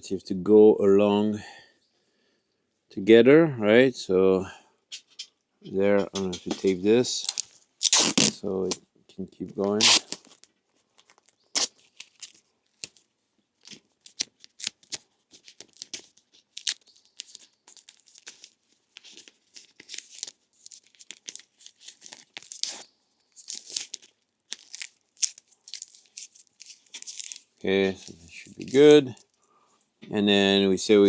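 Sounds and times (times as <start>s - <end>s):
adhesive tape ripping off roll: 7.2s - 8.8s, 9.6s - 10.5s, 11.2s - 13.0s, 14.0s - 18.3s, 19.2s - 29.2s.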